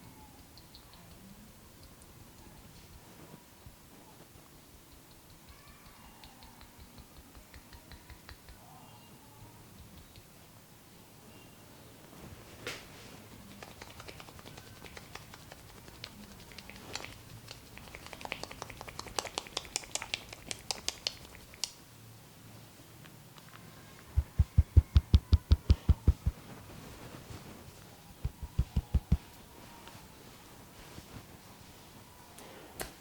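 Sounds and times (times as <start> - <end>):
fingers rubbing through hair: 12.2 - 21.8, 24.0 - 32.0
hands tapping rapidly: 13.3 - 21.7, 24.2 - 26.4, 28.2 - 29.3.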